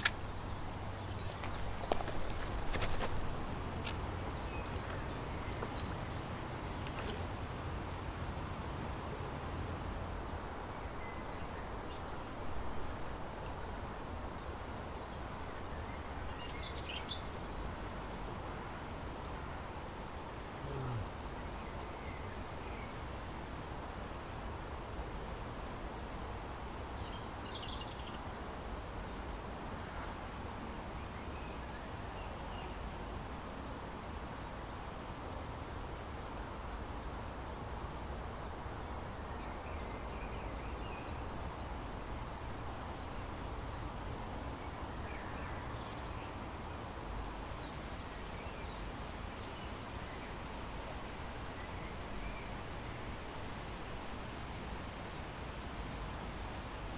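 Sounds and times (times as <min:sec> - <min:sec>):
outdoor background noise: 0:00.0 - 0:56.9
faint bird calls: 0:20.6 - 0:21.4.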